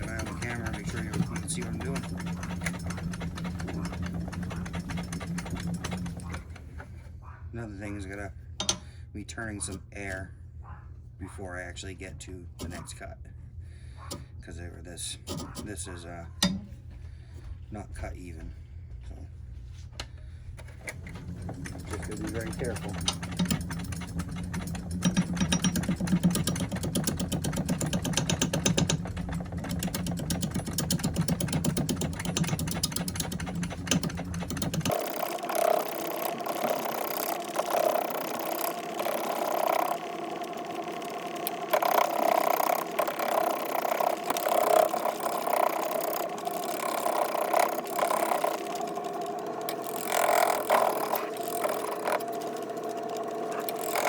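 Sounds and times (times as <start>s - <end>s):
gouge cutting wood: 0.0s - 6.5s, 21.7s - 54.0s
wood lathe spinning: 0.0s - 7.1s, 20.8s - 54.0s.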